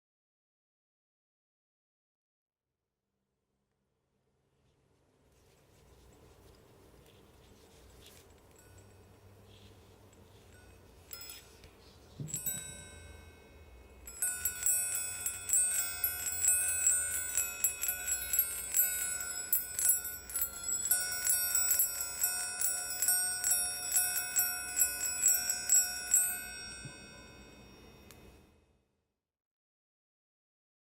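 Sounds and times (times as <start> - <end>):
chimes ringing: 8.1 - 28.5.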